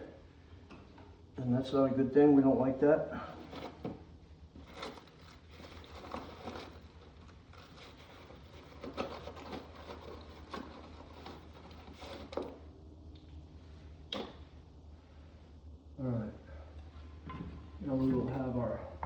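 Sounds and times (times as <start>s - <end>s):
low steady hum: 0.0s - 19.0s
clicks and rustles of wires: 3.3s - 13.4s.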